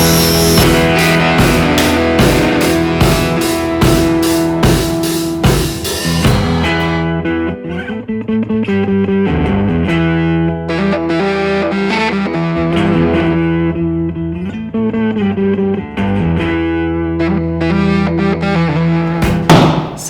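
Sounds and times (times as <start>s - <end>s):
bass line: 0.0s - 7.3s
distorted electric guitar riff: 0.0s - 19.0s.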